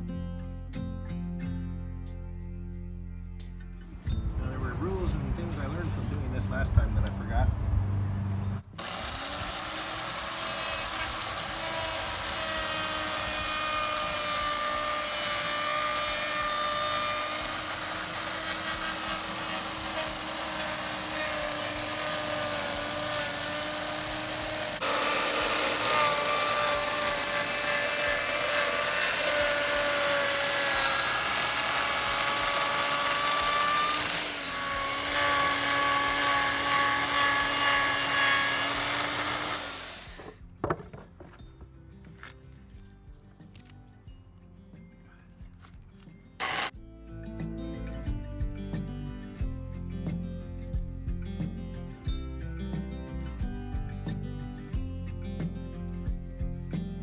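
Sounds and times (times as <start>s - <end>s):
power tool whining on wood: 8.4s - 41.0s, 46.4s - 46.7s.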